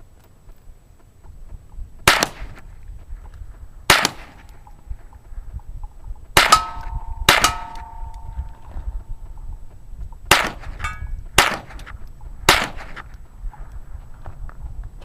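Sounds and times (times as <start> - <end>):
gunshots: 2.0 - 2.6, 3.9 - 4.4, 6.4 - 7.9, 10.3 - 11.8, 12.5 - 13.0
bullet ringing off steel target: 6.4 - 8.7, 10.3 - 11.8.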